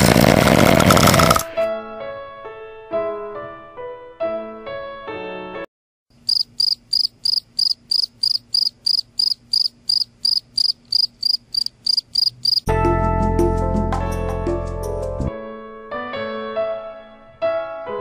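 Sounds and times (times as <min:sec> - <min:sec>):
music: 0:01.4 - 0:05.7, 0:12.7 - 0:18.0
cricket chirping: 0:06.2 - 0:12.7.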